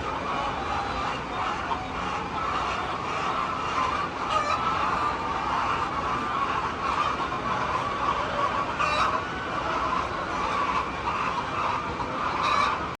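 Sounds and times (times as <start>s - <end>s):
hens clucking: 0.0s - 13.0s
steady background noise: 0.0s - 13.0s.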